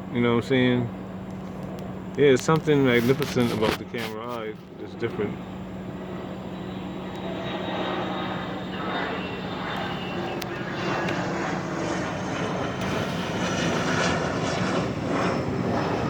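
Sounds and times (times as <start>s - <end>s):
engine drone: 0.0s - 16.0s
broad rushing noise: 10.2s - 16.0s.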